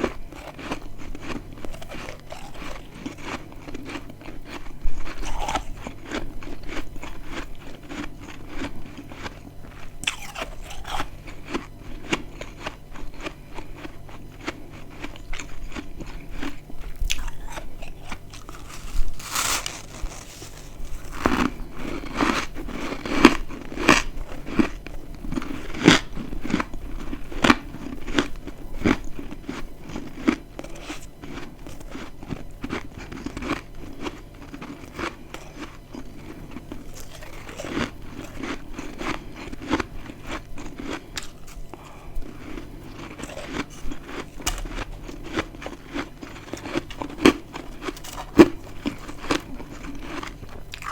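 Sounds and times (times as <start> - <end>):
chewing crunchy frost: 0.0 - 50.9.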